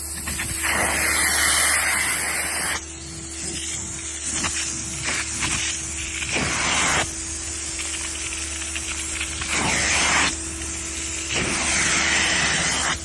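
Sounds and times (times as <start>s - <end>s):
hissing spray bursts: 0.0s - 13.0s
steam cleaner humming: 0.0s - 13.0s.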